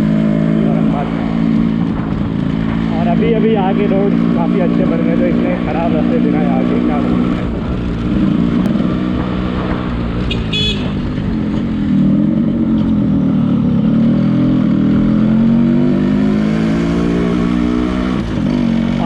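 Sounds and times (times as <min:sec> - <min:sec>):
high horn beep: 0:10.3 - 0:11.0.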